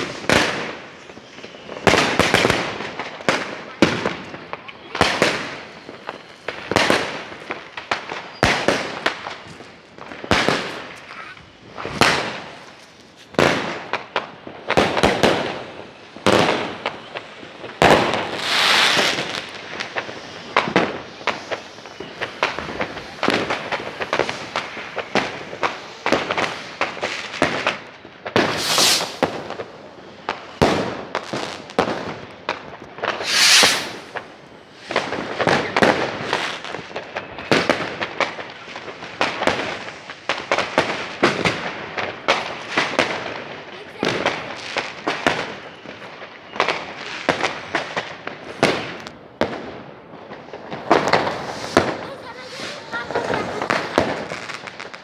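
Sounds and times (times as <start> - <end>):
fireworks bangs and crackles: 0.0 - 55.0
hissing crackling firework bursts: 0.0 - 55.0.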